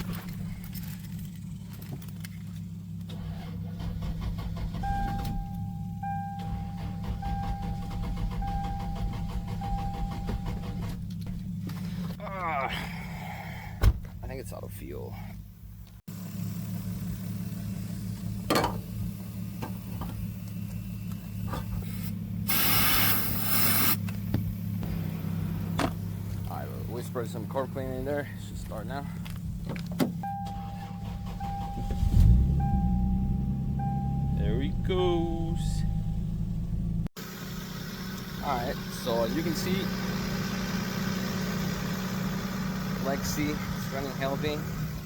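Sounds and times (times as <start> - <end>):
car engine running: 0.0 - 45.0
car warning chime beeping: 4.8 - 10.9, 30.2 - 36.7
loud hiss: 22.5 - 24.0.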